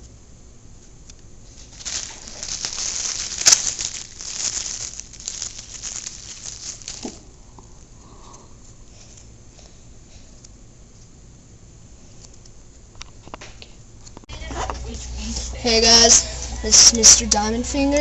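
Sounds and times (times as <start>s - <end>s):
plastic packaging crinkling: 1.5s - 7.4s.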